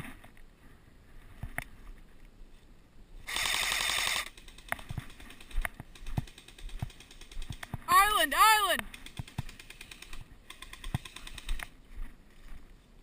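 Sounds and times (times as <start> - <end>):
airsoft gun full-auto burst: 3.3 - 5.5.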